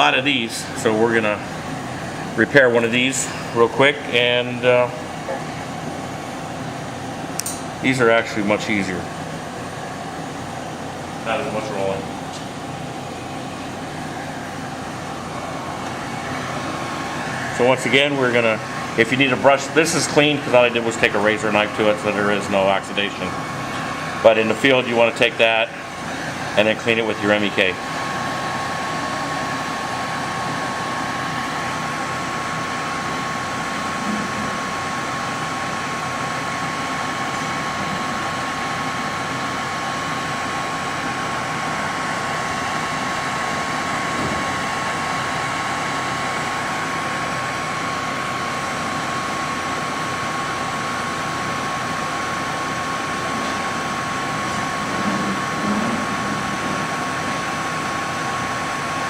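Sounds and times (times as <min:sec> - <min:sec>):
hot-air tool blowing with whine: 0:00.0 - 0:59.0.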